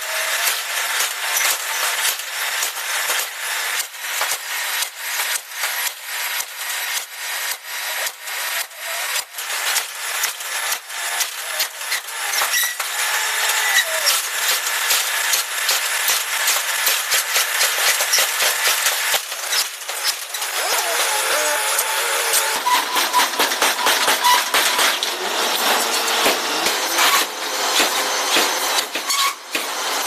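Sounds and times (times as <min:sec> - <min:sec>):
metal scraping and clattering: 0:21.8 - 0:29.4.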